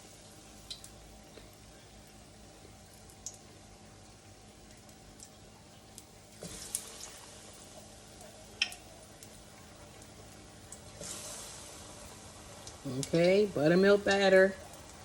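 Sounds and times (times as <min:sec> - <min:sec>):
food sizzling in oil: 0:06.4 - 0:15.0.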